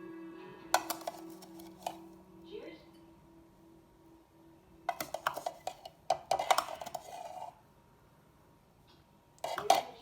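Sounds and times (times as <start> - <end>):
metal spoon knocking on metal: 0.8 - 1.4, 4.9 - 7.0.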